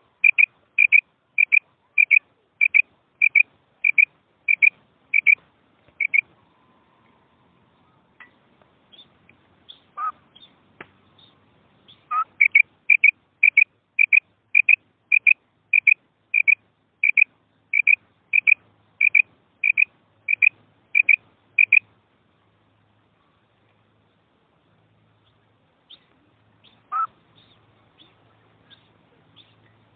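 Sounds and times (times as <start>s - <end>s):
quail calling: 0.0s - 6.4s, 9.7s - 10.5s, 11.9s - 21.8s, 26.6s - 27.2s.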